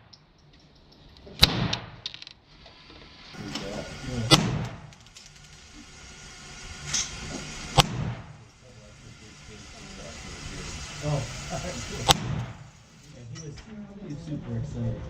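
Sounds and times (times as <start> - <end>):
loud gunshots: 1.4 - 2.0, 4.2 - 4.9, 7.7 - 8.4, 12.0 - 12.7
faint gunshot report: 4.3 - 4.9, 12.1 - 12.6.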